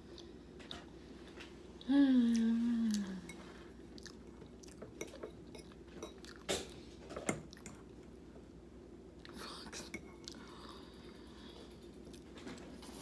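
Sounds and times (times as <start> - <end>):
low vocal sound: 1.8 - 3.5
close-up chewing: 2.3 - 5.0.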